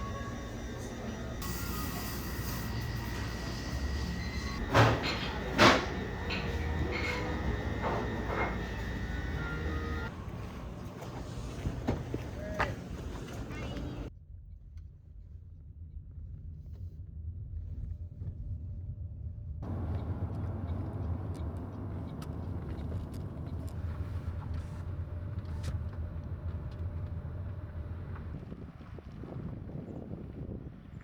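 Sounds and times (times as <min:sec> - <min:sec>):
car road rumble: 0:03.2 - 0:14.1, 0:19.6 - 0:30.8.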